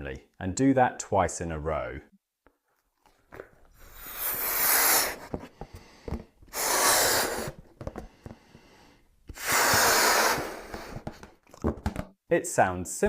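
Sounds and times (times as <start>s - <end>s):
person blowing into balloon: 3.6s - 11.6s.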